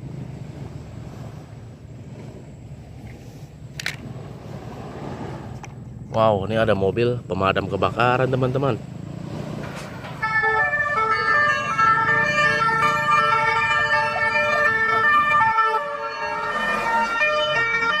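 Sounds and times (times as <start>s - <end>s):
electronic toy siren: 10.2s - 18.0s.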